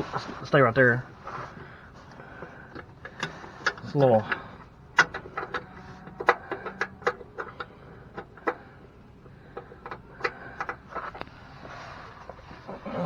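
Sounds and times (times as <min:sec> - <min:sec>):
metal hardware clicks and knocks: 0:02.4 - 0:11.3.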